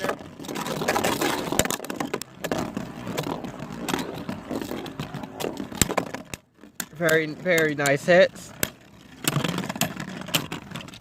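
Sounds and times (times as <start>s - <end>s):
spinning tops whirring and scraping: 0.0s - 11.0s.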